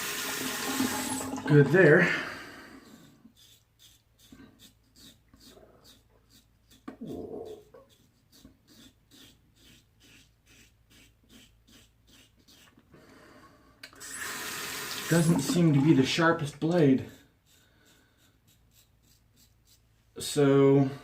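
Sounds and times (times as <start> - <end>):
razor scraping stubble: 2.8 - 12.8, 15.1 - 20.4.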